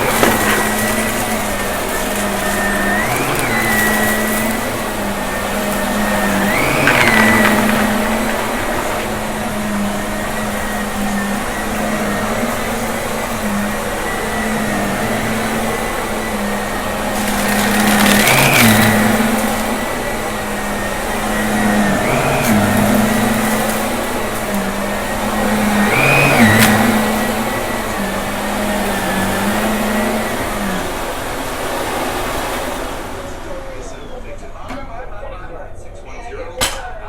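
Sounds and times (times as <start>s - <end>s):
crackling of debris picked up: 0.0s - 11.3s, 16.4s - 20.0s
vacuum cleaner motor whine: 0.0s - 34.9s.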